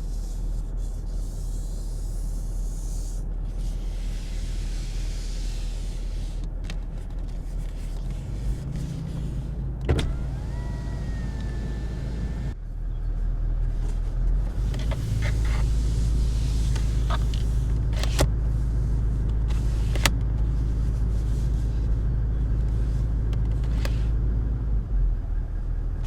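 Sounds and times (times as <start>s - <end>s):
constant low hum: 0.0s - 26.0s
power window motor whine: 8.4s - 12.6s, 14.5s - 18.4s.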